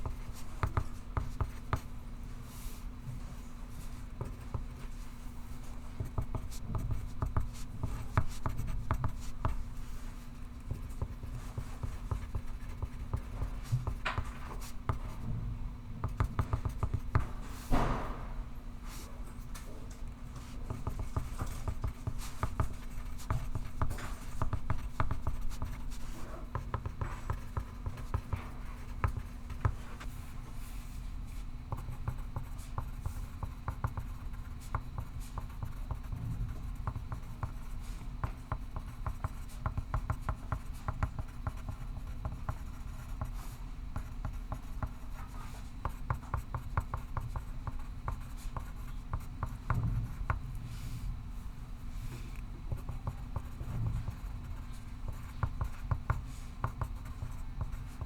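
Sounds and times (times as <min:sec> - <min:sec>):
pencil scratching on paper: 0:03.8 - 0:15.0, 0:20.4 - 0:30.1, 0:31.7 - 0:50.3, 0:52.7 - 0:58.0.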